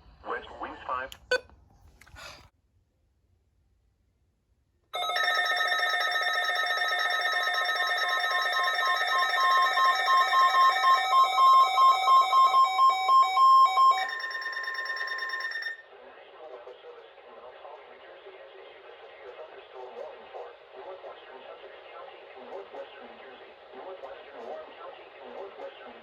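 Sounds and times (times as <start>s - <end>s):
loud steady alert tone: 5.0s - 15.8s
pulsing beep: 8.4s - 15.8s.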